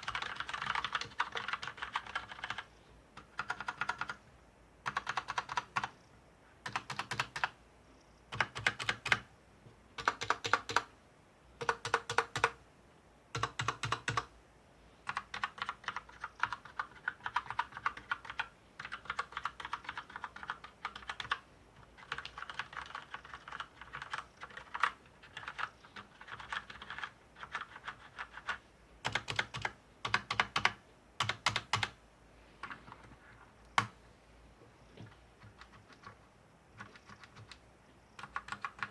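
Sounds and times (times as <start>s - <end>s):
mechanical keyboard typing: 0.0s - 4.2s, 4.8s - 5.9s, 6.6s - 7.6s, 8.3s - 9.3s, 10.0s - 10.9s, 11.6s - 12.6s, 13.3s - 14.3s, 15.0s - 32.0s, 33.8s - 34.0s, 35.0s - 37.6s, 38.2s - 38.9s.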